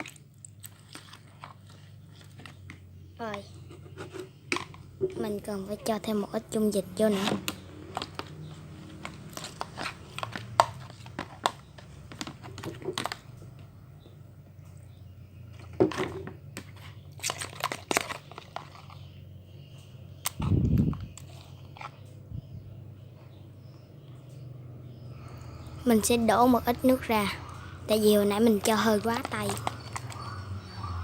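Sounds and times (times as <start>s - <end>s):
slime being mixed and handled: 0.0s - 4.4s, 25.9s - 30.4s
sharp clicks and crackles: 29.0s - 30.4s.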